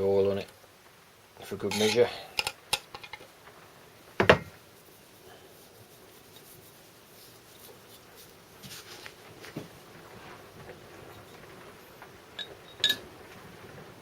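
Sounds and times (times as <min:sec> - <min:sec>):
faint handling sounds: 0:01.4 - 0:13.5.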